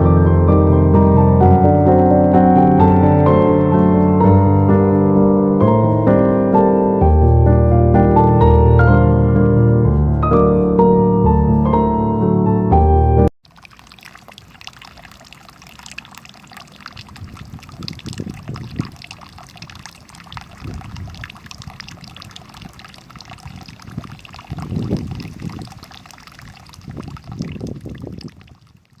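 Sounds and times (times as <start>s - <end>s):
fountain water trickling and splashing: 13.4s - 29.0s.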